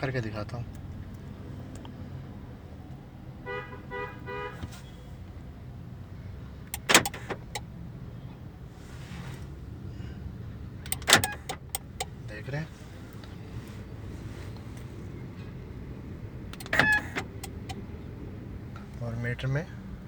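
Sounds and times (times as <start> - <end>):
door lock actuators clunking: 6.7 - 7.6, 10.8 - 12.1, 16.5 - 17.8.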